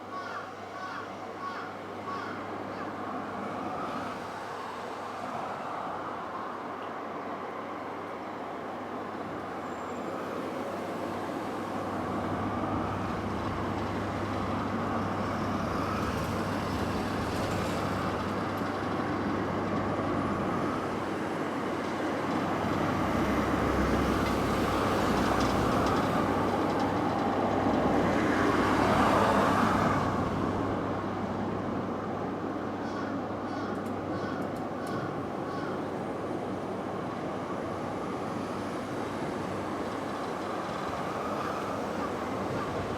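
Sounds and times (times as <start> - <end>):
train wheels rumbling on rails: 10.0 - 32.6, 33.7 - 42.9.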